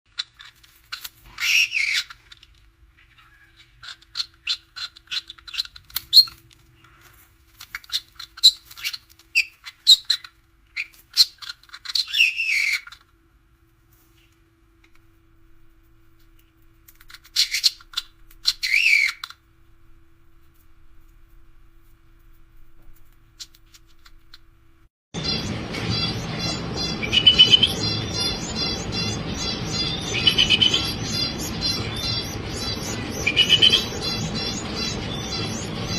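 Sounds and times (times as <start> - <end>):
chicks begging calls: 25.2 - 35.9.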